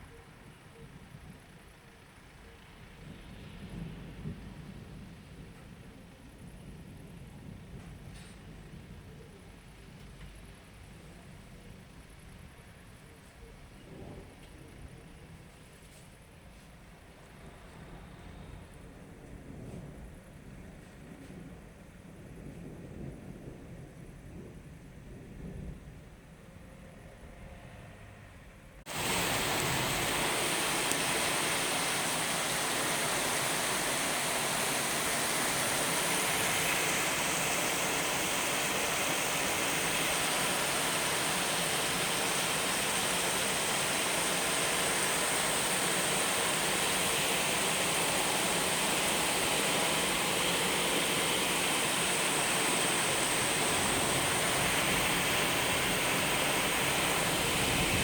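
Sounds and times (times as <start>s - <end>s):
heavy rain pouring: 28.9s - 58.0s.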